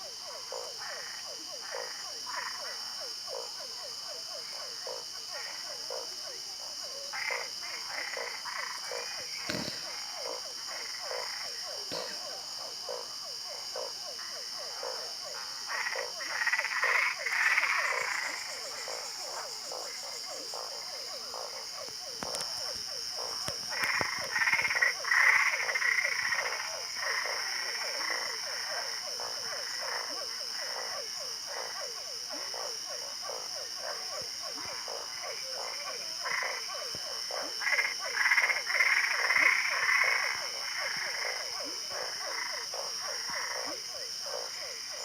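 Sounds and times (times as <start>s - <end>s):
frogs croaking: 0.0s - 45.0s.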